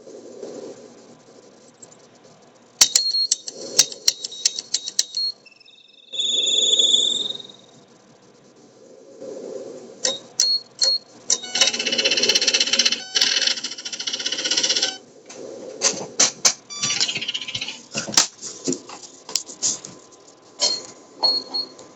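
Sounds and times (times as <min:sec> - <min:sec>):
sharp clicks: 0:02.8 - 0:05.4
short high beeps: 0:04.2 - 0:07.7, 0:16.7 - 0:17.7
radio scanner static: 0:11.2 - 0:15.1, 0:16.7 - 0:20.4.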